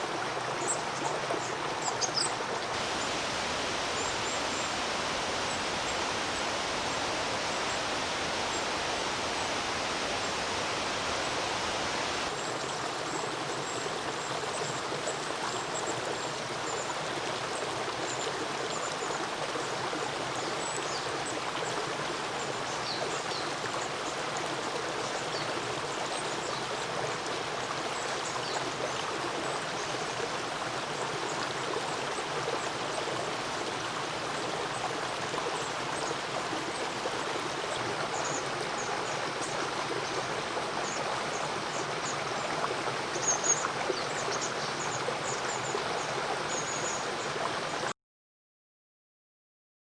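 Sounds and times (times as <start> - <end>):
flowing river water: 0.0 - 47.9
small birds calling: 0.6 - 3.1, 37.8 - 47.3.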